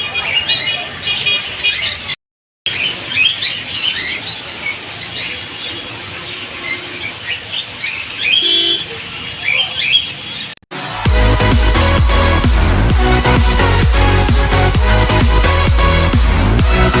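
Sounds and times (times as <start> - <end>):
small birds chirping: 0.0 - 10.6.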